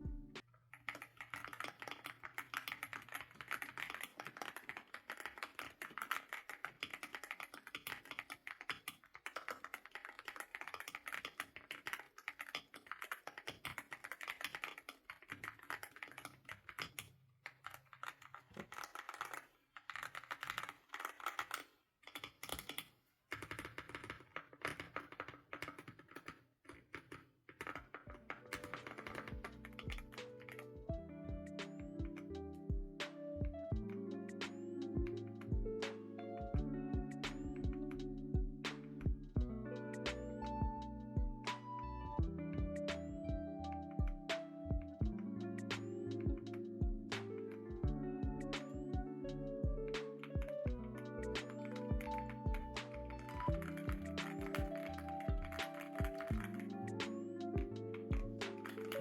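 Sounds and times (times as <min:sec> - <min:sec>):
background music: 0:00.0 - 0:00.5, 0:28.1 - 0:59.0
mechanical keyboard typing: 0:00.6 - 0:32.4, 0:42.6 - 0:59.0.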